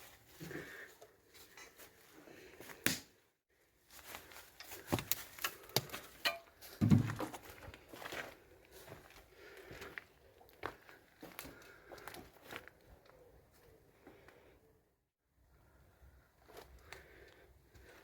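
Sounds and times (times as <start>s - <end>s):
footsteps on debris: 3.9s - 13.0s.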